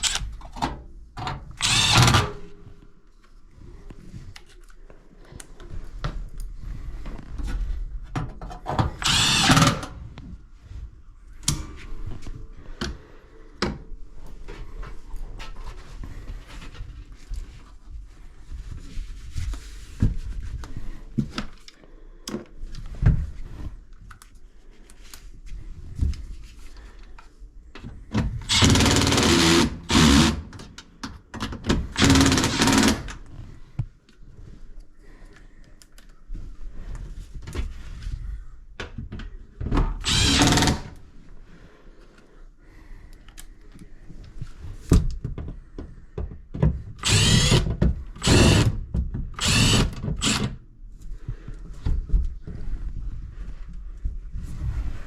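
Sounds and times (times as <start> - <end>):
power drill running: 0.0 - 0.2, 1.6 - 2.4, 9.0 - 10.0, 28.5 - 30.5, 32.0 - 33.2, 40.0 - 41.0, 47.0 - 48.8, 49.4 - 50.6.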